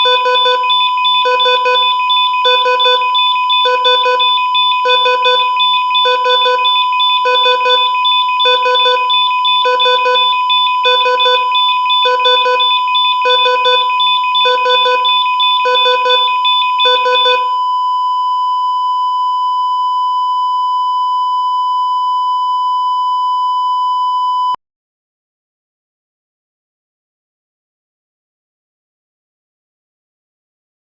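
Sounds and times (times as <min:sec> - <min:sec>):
flatline tone: 0:00.0 - 0:17.6
steady monitor tone: 0:00.0 - 0:17.6
heart monitor beeping: 0:00.0 - 0:18.0.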